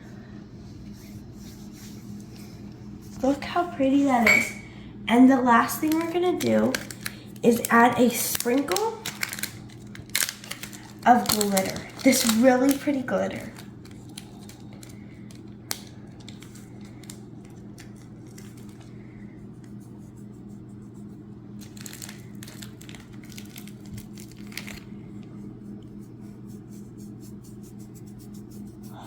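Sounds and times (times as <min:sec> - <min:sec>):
steady low hum: 0:00.0 - 0:29.0
slime clicking and crackling: 0:05.8 - 0:18.8.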